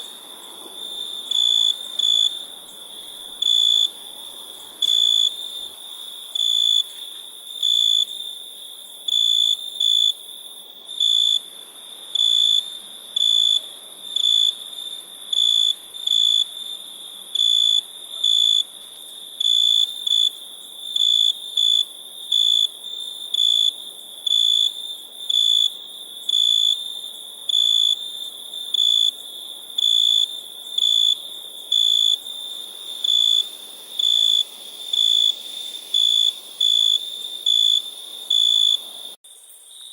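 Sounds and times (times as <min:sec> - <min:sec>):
crickets chirping: 0:00.0 - 0:39.9
insects hissing: 0:23.7 - 0:39.9.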